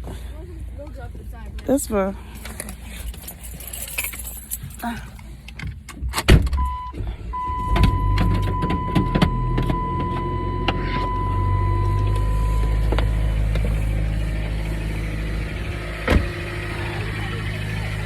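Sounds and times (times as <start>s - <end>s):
car engine starting and idling: 0.0s - 18.0s
car electronic warning chime: 6.6s - 13.4s.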